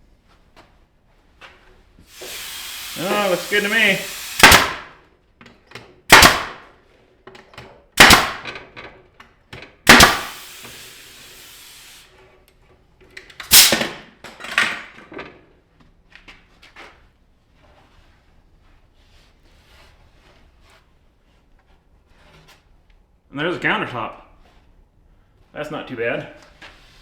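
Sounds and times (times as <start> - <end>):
hiss: 2.1 - 4.9, 9.9 - 12.1, 13.5 - 13.8
loud sharp knocks: 4.4 - 4.9, 6.1 - 6.6, 9.9 - 10.4.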